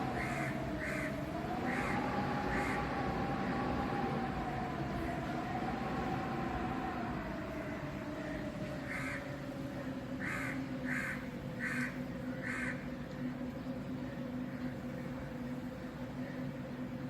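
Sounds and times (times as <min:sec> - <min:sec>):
wind blowing: 0:00.0 - 0:17.0
crow cawing: 0:00.2 - 0:01.1, 0:08.9 - 0:09.2, 0:10.2 - 0:12.8.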